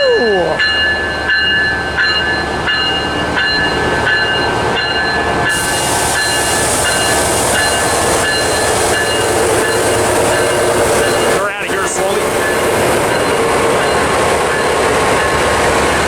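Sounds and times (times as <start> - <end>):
low rumble of train: 0.0 - 16.0
train bell ringing: 0.0 - 16.0
steady hiss: 5.5 - 10.8.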